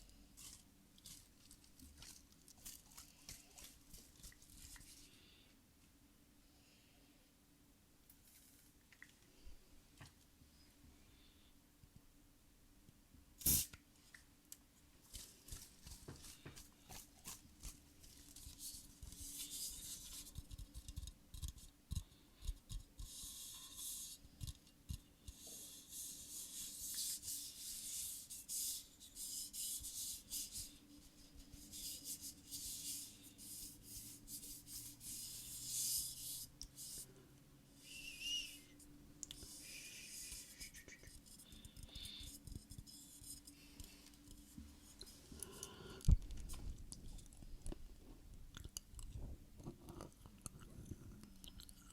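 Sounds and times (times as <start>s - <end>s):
scratching and rubbing on a surface: 22.5s - 37.1s, 39.5s - 41.6s.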